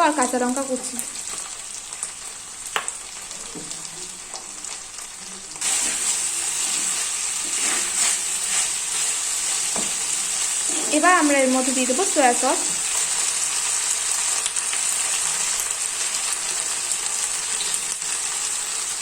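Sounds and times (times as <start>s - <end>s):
food sizzling in frying pan: 0.0s - 19.0s
spatula tapping pan: 9.7s - 10.0s.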